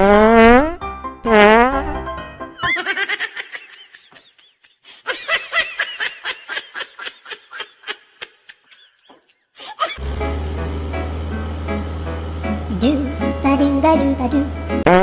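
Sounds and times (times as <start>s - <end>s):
high-pitched rapid laughter: 2.6s - 10.0s.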